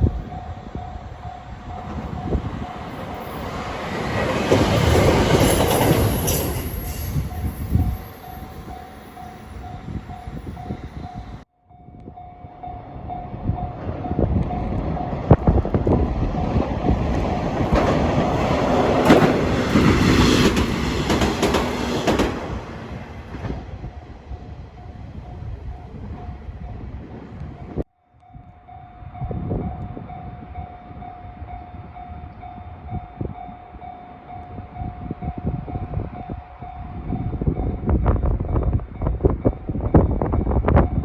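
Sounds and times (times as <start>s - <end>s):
diesel railcar passing: 0.0s - 41.0s
electric train passing: 0.0s - 41.0s
wheels clicking over rail joints: 13.8s - 23.8s.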